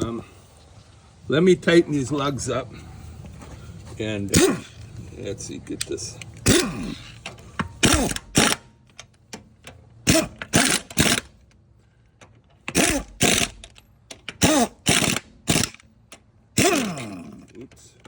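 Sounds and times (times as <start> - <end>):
impact wrench bursts: 4.3 - 4.8, 6.4 - 9.0, 10.0 - 11.4, 12.6 - 17.5.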